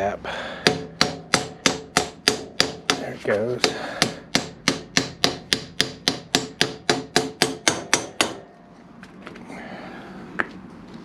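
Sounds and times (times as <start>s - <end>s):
hammer striking metal axle: 0.6s - 8.6s.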